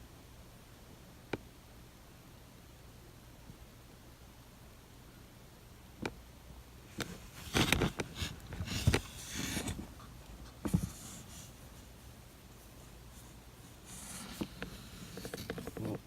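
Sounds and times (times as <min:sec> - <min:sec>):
ferret snoring: 0:13.8 - 0:16.0.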